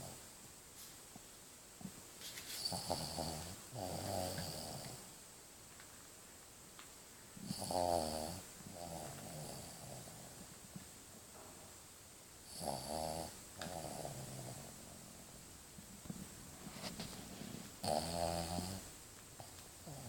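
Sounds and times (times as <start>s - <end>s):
puppy snoring: 2.6s - 5.2s, 7.4s - 10.6s, 12.4s - 15.2s, 17.5s - 20.0s.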